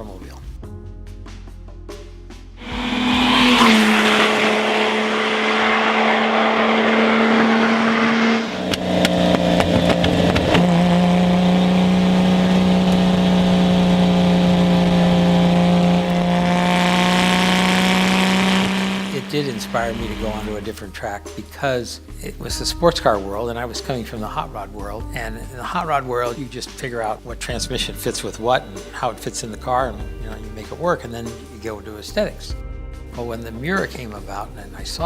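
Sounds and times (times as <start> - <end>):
car engine running hard: 2.6 - 20.7.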